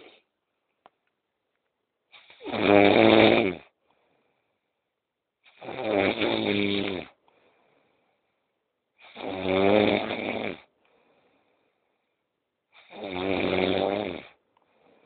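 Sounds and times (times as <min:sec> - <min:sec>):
person snoring loudly: 0:02.2 - 0:03.7, 0:05.5 - 0:07.1, 0:09.0 - 0:10.7, 0:12.8 - 0:14.4.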